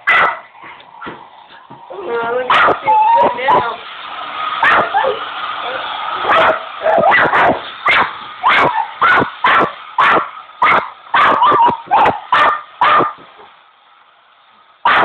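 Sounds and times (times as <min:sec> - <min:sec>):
dog barking: 0:00.0 - 0:00.5, 0:02.5 - 0:03.8, 0:04.6 - 0:05.2, 0:06.2 - 0:13.2
hairdryer: 0:01.8 - 0:13.5.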